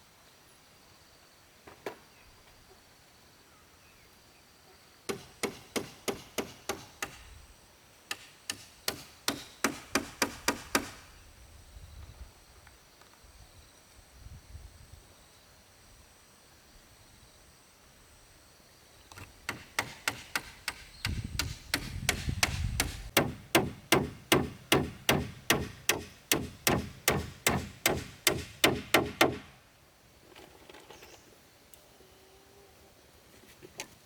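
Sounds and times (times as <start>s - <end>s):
hammer striking: 5.1s - 7.2s, 19.5s - 29.6s.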